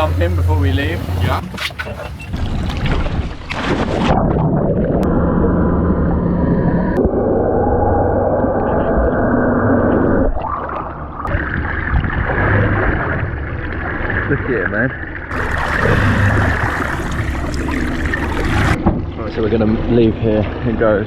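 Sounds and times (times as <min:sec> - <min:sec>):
underwater rushing and gurgling: 0:00.0 - 0:21.0
splash into water: 0:15.3 - 0:18.8.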